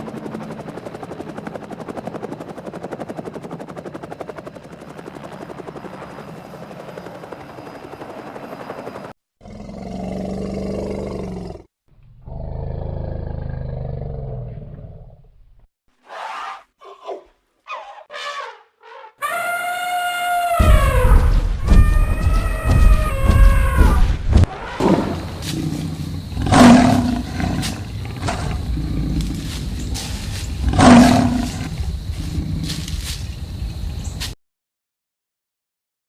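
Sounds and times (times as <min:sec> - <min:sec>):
rattling animal-like growl: 0:09.4 - 0:15.2, 0:24.8 - 0:29.6
loud roars: 0:20.5 - 0:29.5, 0:30.6 - 0:31.7.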